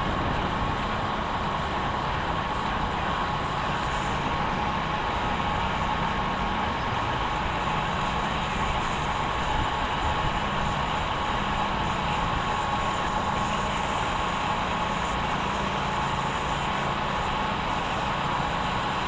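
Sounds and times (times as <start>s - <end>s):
wind rumbling on microphone: 0.0s - 7.8s
high whine: 0.0s - 19.0s.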